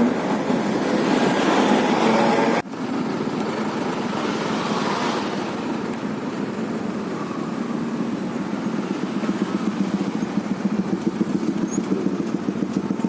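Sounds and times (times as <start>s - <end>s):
vehicle engine idling: 5.5s - 13.0s.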